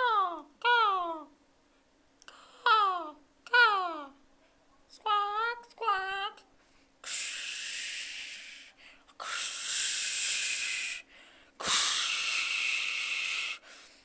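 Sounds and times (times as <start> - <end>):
person hissing like waves: 7.0 - 14.0.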